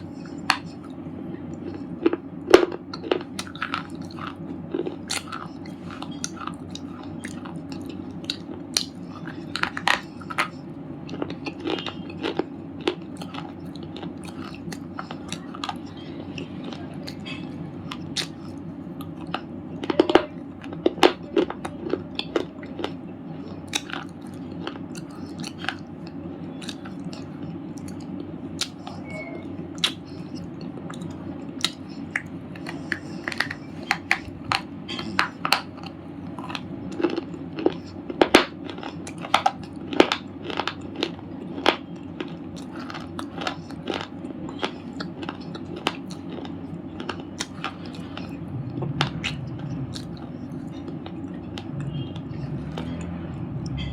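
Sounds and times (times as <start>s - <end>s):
steady low hum: 0.0s - 53.9s
person crunching slate chips: 36.4s - 48.4s.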